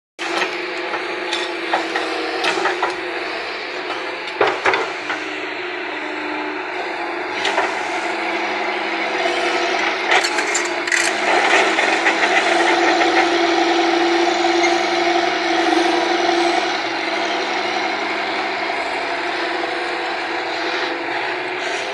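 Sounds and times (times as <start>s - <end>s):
earthmoving machine engine whining: 0.2s - 21.9s.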